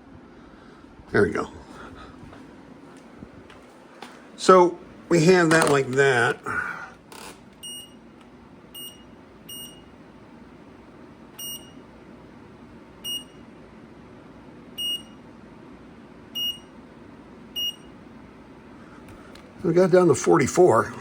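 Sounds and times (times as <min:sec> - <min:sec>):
short electronic beeps: 0:07.6 - 0:08.0, 0:08.8 - 0:09.9, 0:11.4 - 0:11.8, 0:13.1 - 0:13.4, 0:14.8 - 0:15.2, 0:16.4 - 0:16.7, 0:17.6 - 0:17.9.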